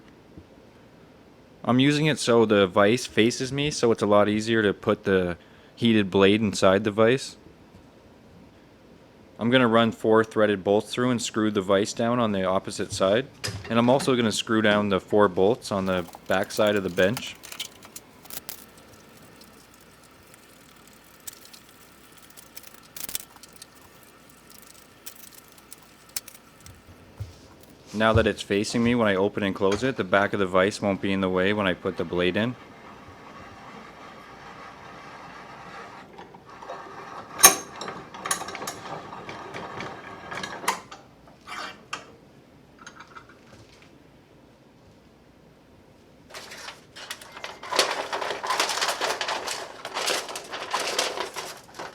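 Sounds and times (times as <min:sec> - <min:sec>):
vise mechanism clicking and rattling: 0:15.8 - 0:27.8, 0:47.0 - 0:51.9.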